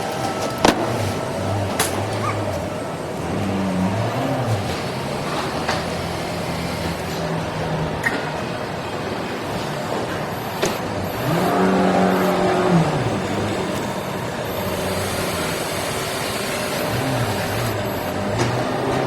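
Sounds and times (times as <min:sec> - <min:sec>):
machine noise: 0:00.0 - 0:19.0
motor whine: 0:09.5 - 0:19.0.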